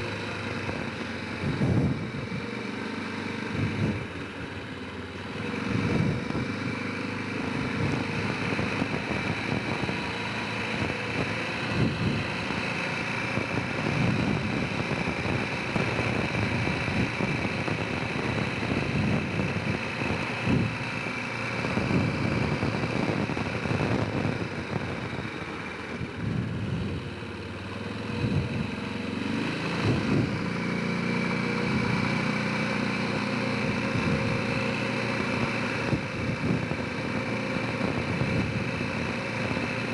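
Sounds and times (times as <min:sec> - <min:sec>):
quad bike engine running: 0:00.0 - 0:39.9.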